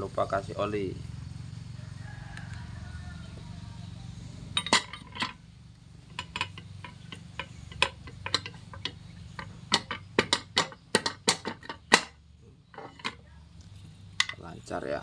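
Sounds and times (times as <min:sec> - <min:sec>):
metal clicks and knocks: 0:04.6 - 0:05.4, 0:06.0 - 0:13.2, 0:14.2 - 0:14.5.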